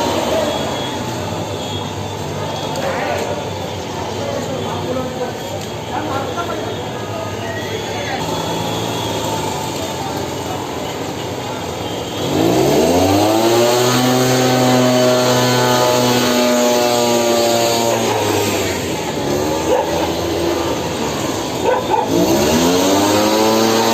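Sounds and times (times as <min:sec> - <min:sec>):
small sprayer engine revving: 0:00.0 - 0:02.0, 0:08.2 - 0:23.9.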